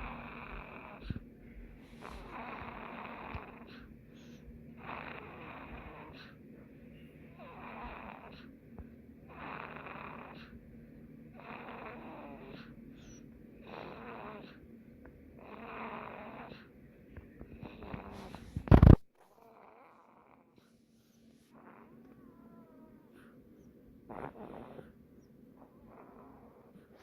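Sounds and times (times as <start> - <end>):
rasping snoring: 0.0 - 1.2, 1.9 - 6.4, 7.4 - 8.5, 9.3 - 10.6, 11.4 - 14.6, 15.4 - 16.7, 17.6 - 20.7, 21.5 - 23.4, 24.1 - 25.0, 25.6 - 27.0.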